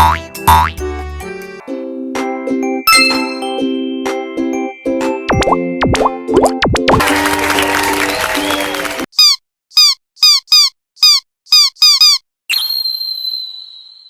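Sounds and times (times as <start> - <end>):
bright ding: 2.9 - 3.7.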